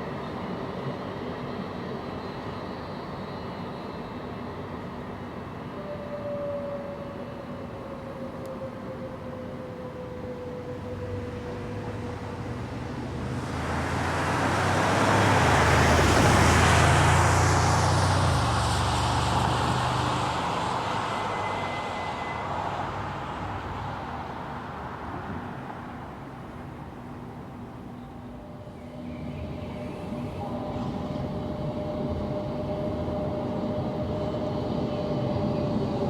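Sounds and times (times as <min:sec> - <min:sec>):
vehicle passing by: 0:11.2 - 0:25.1.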